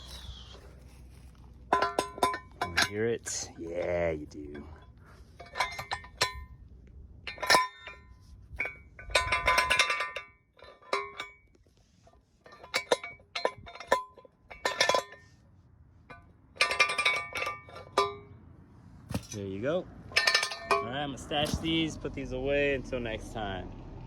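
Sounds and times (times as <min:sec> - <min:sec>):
metal jack stands clinking: 0:01.6 - 0:03.9, 0:04.5 - 0:06.6, 0:07.2 - 0:11.6, 0:12.4 - 0:15.3, 0:16.1 - 0:18.3, 0:20.1 - 0:21.6.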